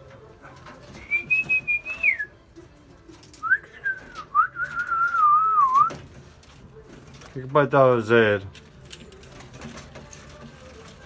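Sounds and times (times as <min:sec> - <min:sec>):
person whistling: 0:01.0 - 0:02.3, 0:03.4 - 0:05.9.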